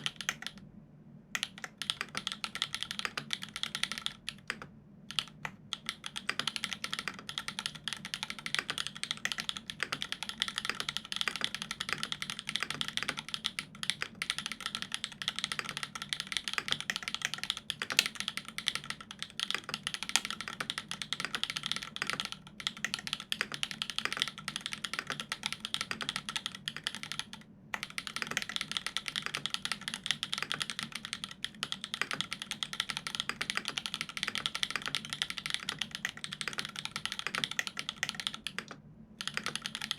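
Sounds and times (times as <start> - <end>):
fast typing on mechanical keyboard: 0.0 - 0.6, 1.4 - 39.9.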